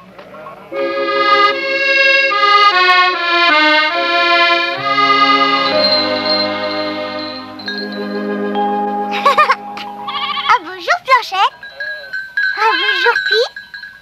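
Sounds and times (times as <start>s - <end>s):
reedy instrument melody: 0.7s - 11.8s.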